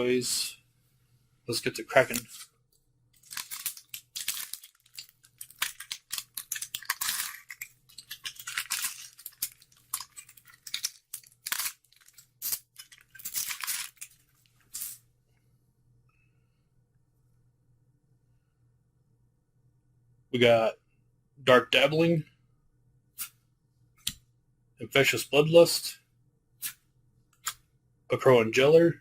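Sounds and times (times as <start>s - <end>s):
wrapper tearing and crinkling: 3.2s - 14.2s.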